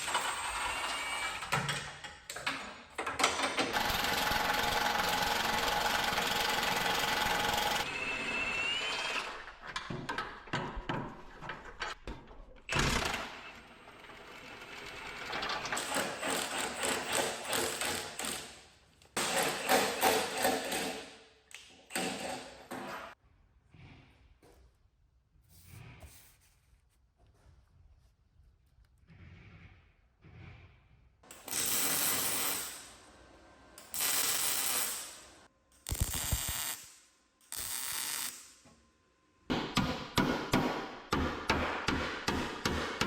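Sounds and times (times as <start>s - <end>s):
power tool running: 3.7s - 9.6s
knocks and clatter: 9.6s - 13.3s.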